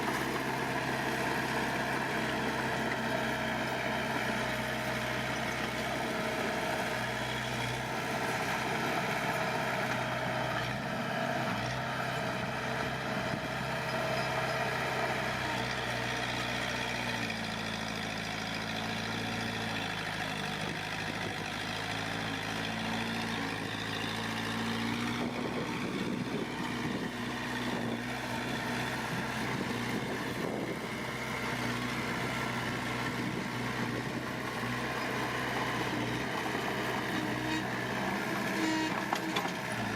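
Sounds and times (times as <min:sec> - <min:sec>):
heavy diesel machinery running: 0:00.0 - 0:39.9.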